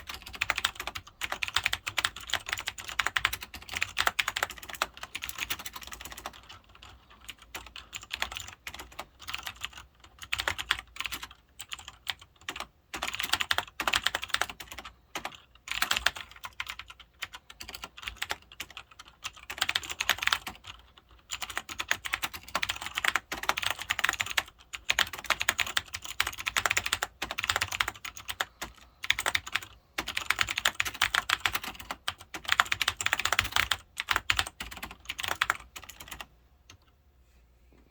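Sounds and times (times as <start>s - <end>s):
clicky keyboard typing: 0.0s - 37.0s.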